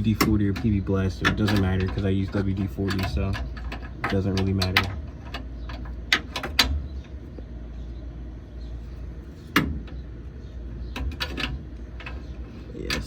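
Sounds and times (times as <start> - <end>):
metal tools clicking and clanking: 0.0 - 6.8, 10.9 - 13.0
low steady hum: 0.0 - 13.0.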